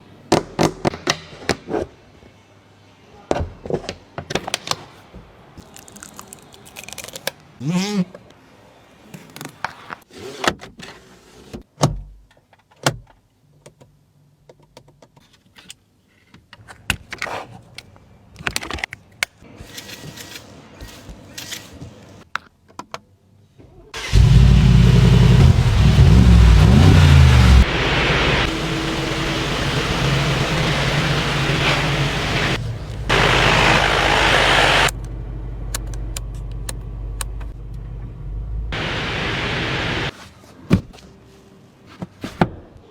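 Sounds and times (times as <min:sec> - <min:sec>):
car engine starting and revving: 0:24.0 - 0:35.0, 0:38.5 - 0:40.1.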